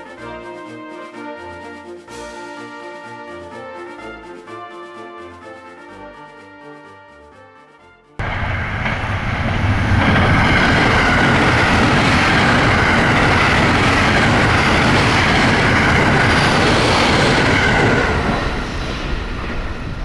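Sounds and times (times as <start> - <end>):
train wheels on rails: 8.2 - 20.0.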